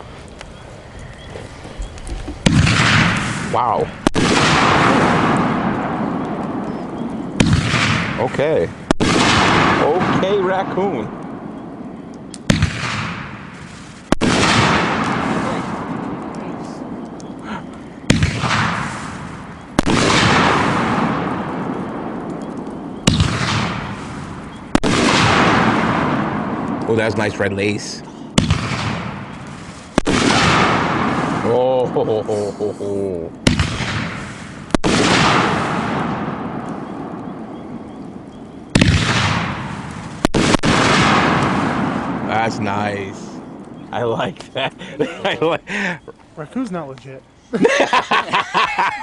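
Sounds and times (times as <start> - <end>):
firework crackling: 1.9 - 11.6, 12.2 - 37.5, 38.7 - 46.0
firework bangs: 2.1 - 32.7, 33.4 - 45.9.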